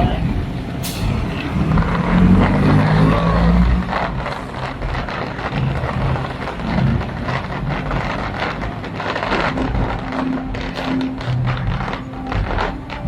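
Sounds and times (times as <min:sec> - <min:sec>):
fireworks crackling and banging: 0:00.0 - 0:13.0.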